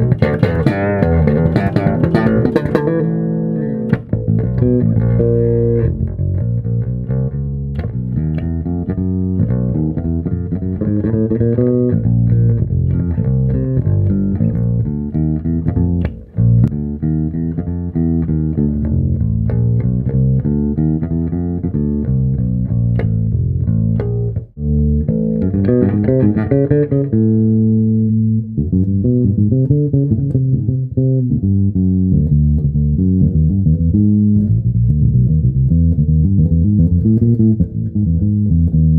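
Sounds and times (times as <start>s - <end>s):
plucked bass guitar lines: 0.0s - 38.9s.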